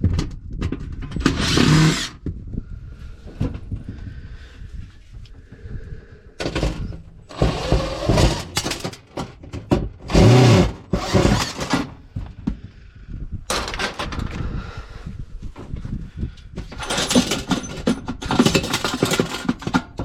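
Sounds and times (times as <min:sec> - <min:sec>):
metal clattering and scraping: 0:00.0 - 0:02.2, 0:06.4 - 0:12.0, 0:13.5 - 0:14.4, 0:16.6 - 0:20.0.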